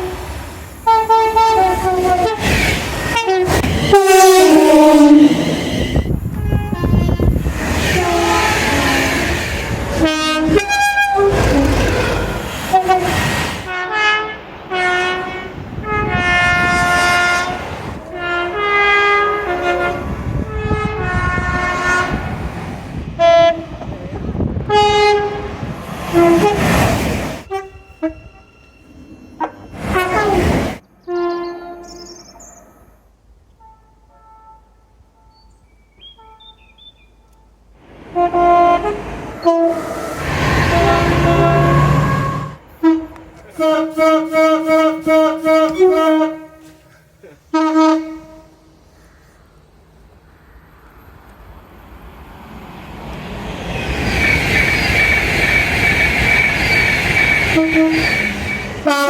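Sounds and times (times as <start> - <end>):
two-tone train horn blasts: 0.0 - 2.4, 3.1 - 11.3, 13.7 - 22.3, 23.2 - 23.8, 24.6 - 26.6, 27.4 - 28.7, 29.4 - 30.4, 31.0 - 32.3, 33.5 - 36.6, 37.2 - 46.9, 47.5 - 48.8, 54.1 - 59.0
trains rumbling and clattering: 0.0 - 31.0, 37.3 - 59.0.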